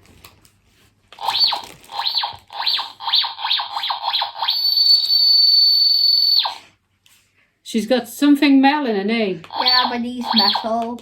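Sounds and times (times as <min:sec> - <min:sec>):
high alarm tone: 0:01.2 - 0:06.6, 0:09.5 - 0:10.7
toy scanner wand sweeping tone: 0:01.2 - 0:06.6, 0:09.5 - 0:10.8.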